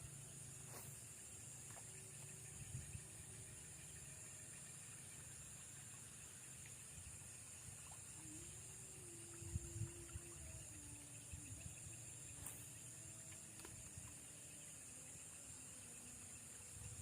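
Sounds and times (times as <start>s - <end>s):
high-pitched hum: 7.5s - 17.0s.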